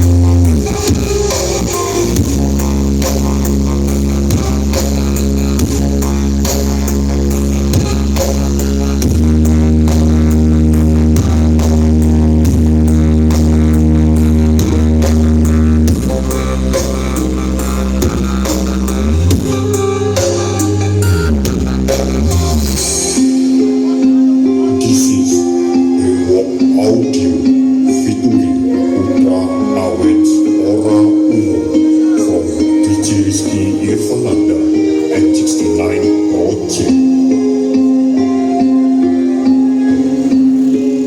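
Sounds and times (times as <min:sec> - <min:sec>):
loud music with deep bass: 0:00.0 - 0:41.0.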